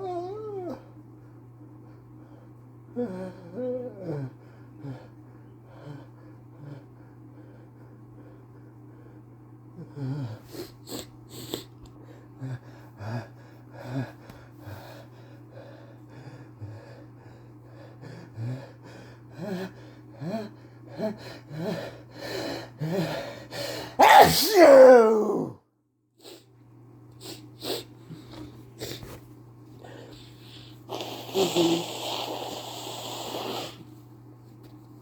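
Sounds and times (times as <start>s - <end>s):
steady low hum: 0.0s - 35.0s
loud sneeze: 24.0s - 25.6s.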